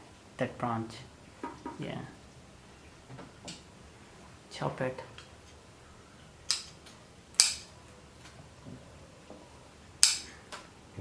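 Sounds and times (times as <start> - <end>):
pruning shears snipping branch: 7.4 - 7.7, 10.0 - 10.4.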